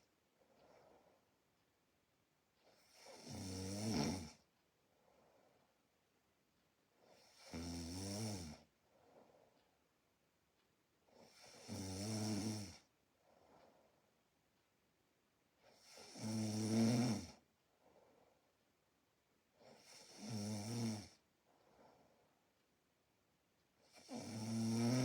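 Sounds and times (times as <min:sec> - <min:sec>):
faint breaths: 0:00.0 - 0:01.6, 0:04.8 - 0:06.1, 0:08.6 - 0:09.9, 0:12.8 - 0:14.3, 0:17.6 - 0:18.6, 0:21.4 - 0:22.6
person snoring: 0:02.9 - 0:04.4, 0:07.2 - 0:08.6, 0:11.2 - 0:12.9, 0:15.7 - 0:17.4, 0:19.7 - 0:21.2, 0:23.9 - 0:25.0.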